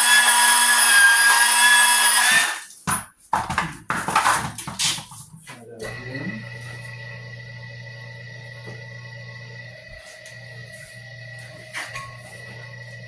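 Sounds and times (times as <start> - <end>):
power tool motor whining: 0.0 - 2.7.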